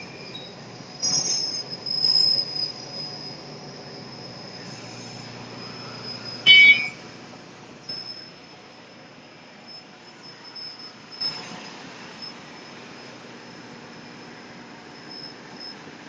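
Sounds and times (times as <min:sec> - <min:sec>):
high-pitched squeal: 0:00.0 - 0:07.3
feeding machine whining: 0:00.0 - 0:16.0
short squeaks: 0:04.6 - 0:07.1.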